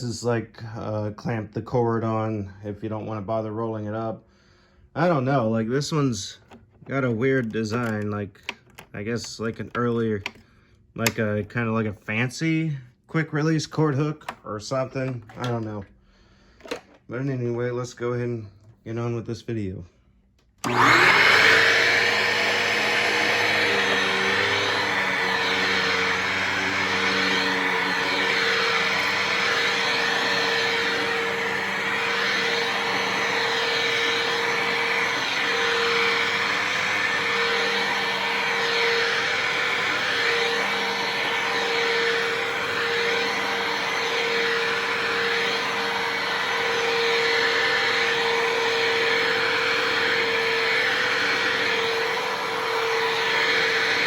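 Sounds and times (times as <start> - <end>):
vacuum cleaner motor whining: 6.4 - 10.4, 20.6 - 54.0.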